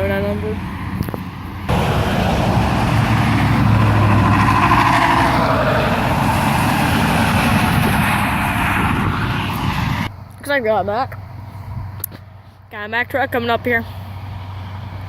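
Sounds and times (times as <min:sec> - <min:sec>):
truck driving past: 0:00.1 - 0:10.2, 0:13.9 - 0:15.0.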